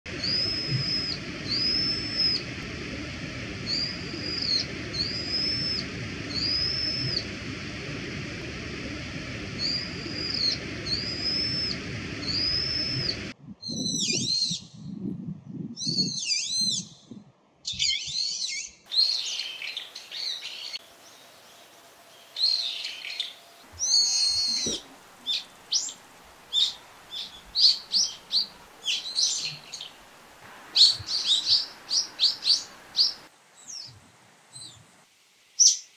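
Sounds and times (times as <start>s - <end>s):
bird whistled calls: 0.2s - 2.6s, 3.6s - 7.6s, 9.6s - 14.6s, 17.7s - 20.8s, 22.4s - 30.0s, 30.7s - 33.9s
background noise: 14.5s - 35.9s
bird squealing calls: 22.4s - 29.9s.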